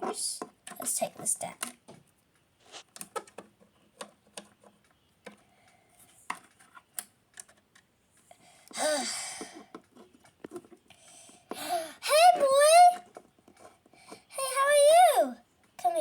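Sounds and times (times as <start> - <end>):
child breathy vocal sound: 8.8 - 9.7, 11.5 - 12.1
toy figures clicking on hard surface: 9.4 - 15.9.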